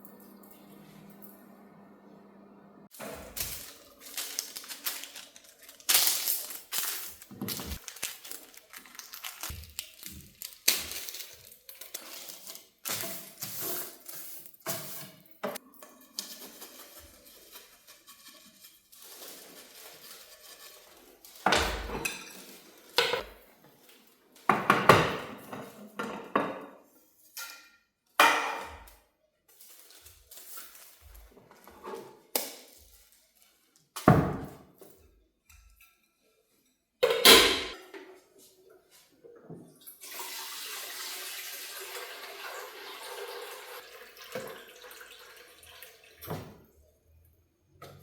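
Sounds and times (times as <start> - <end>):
dishes and utensils clinking: 21.4 - 23.3.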